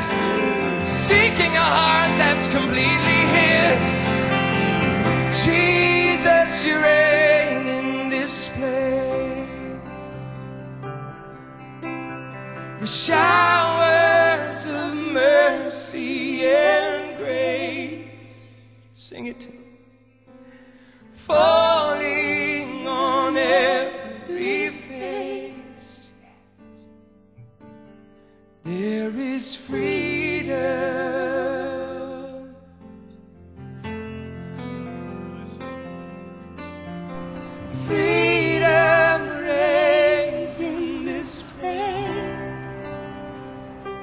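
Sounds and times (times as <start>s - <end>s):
person singing with vibrato: 0.0s - 10.6s, 12.6s - 19.5s, 21.2s - 26.3s, 28.7s - 32.8s, 37.1s - 44.0s
sustained chords: 0.0s - 18.6s, 34.6s - 44.0s
woman singing with vibrato: 37.7s - 42.8s.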